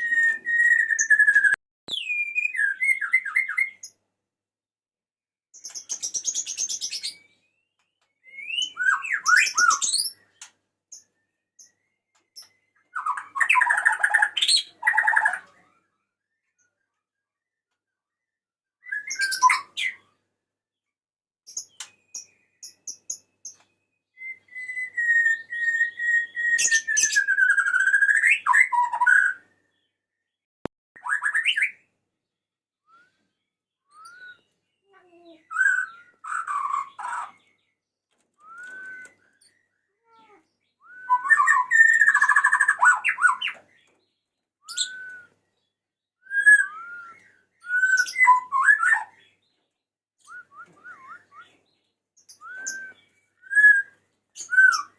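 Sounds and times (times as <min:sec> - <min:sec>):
bird singing whistles: 0:00.0 - 0:03.9, 0:05.6 - 0:16.8, 0:18.2 - 0:20.3, 0:21.6 - 0:30.0, 0:31.0 - 0:31.9, 0:32.8 - 0:37.7, 0:38.4 - 0:49.4, 0:50.2 - 0:54.9.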